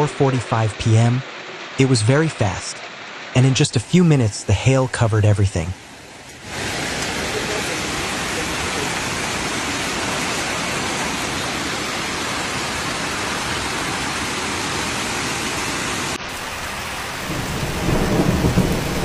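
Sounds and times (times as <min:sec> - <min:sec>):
hail and rain pelting down: 0:05.8 - 0:19.0.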